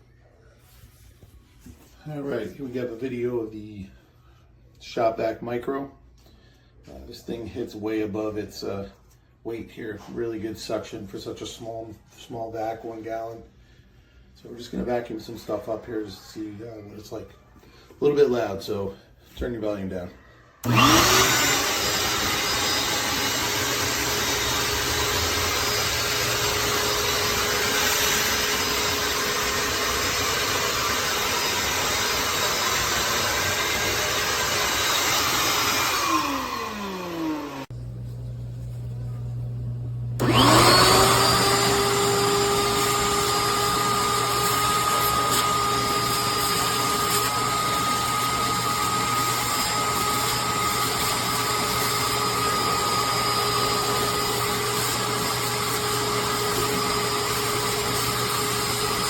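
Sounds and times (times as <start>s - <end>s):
vacuum motor whining: 20.6s - 37.7s, 39.7s - 59.0s.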